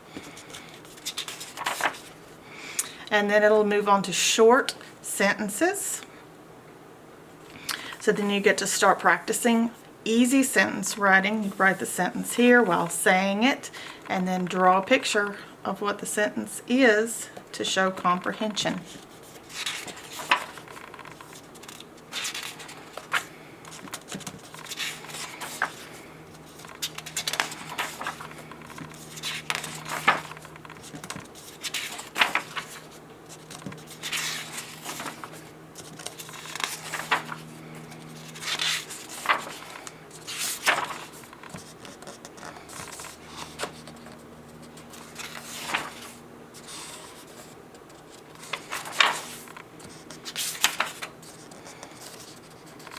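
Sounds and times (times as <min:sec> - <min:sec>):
paper pages rustling: 0:00.1 - 0:02.4, 0:18.0 - 0:52.9.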